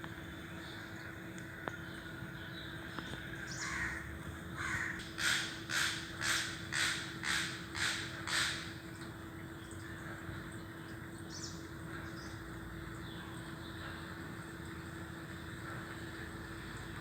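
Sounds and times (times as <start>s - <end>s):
crow cawing: 3.5s - 8.7s.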